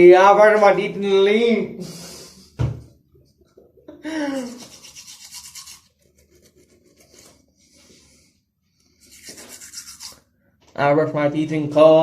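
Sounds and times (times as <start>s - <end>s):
toothbrush scrubbing teeth: 4.4s - 8.1s, 8.8s - 10.3s.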